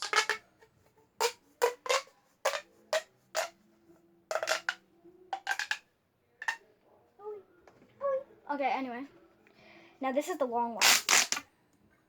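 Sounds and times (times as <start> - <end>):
plastic pop tubes clicking: 0.0 - 0.4, 1.2 - 3.5, 4.3 - 4.8, 5.4 - 5.8, 10.8 - 11.4.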